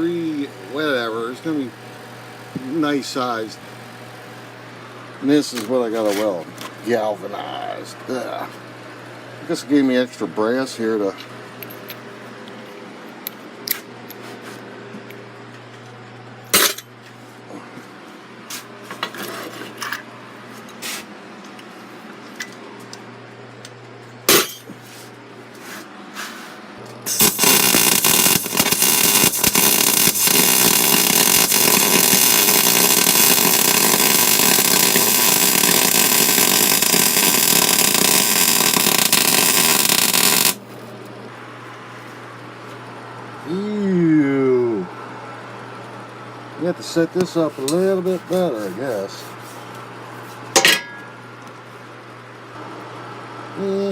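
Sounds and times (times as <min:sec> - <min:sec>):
steady low hum: 0:00.0 - 0:53.9
sharp metal clanks: 0:24.3 - 0:24.7, 0:50.6 - 0:51.1
welder arc crackling: 0:27.0 - 0:40.6.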